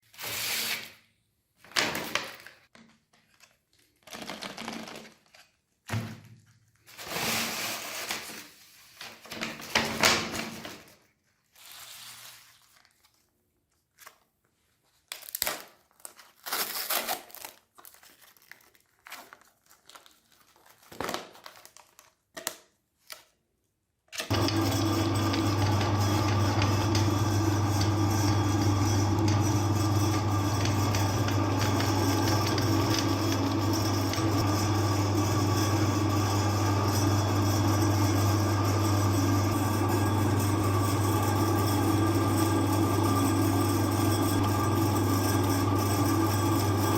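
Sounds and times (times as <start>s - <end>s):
handling noise crinkling and clatter: 15.0s - 23.2s
meat grinder motor humming: 24.3s - 46.9s.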